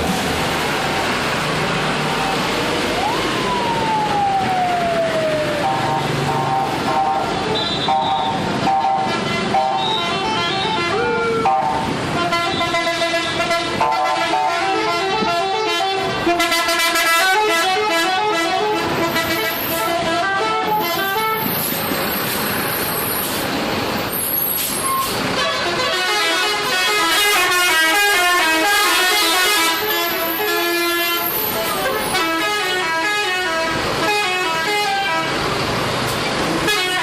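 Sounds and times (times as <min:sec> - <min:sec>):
musical air horns playing melodies: 0:05.6 - 0:21.6, 0:25.3 - 0:35.4.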